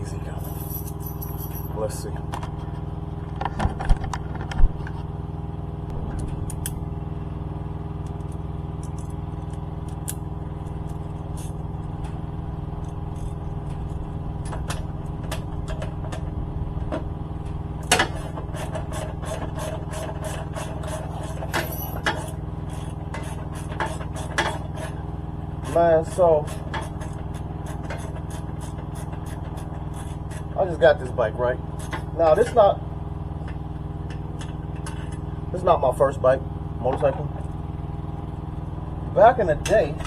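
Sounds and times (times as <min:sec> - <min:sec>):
steady low hum: 0:00.0 - 0:40.0
hand tools clicking on bolts: 0:25.6 - 0:30.6.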